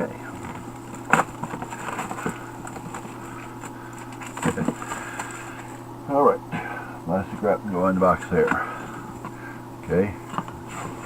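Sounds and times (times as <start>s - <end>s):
plastic shrink wrap crinkling: 0.3s - 5.8s.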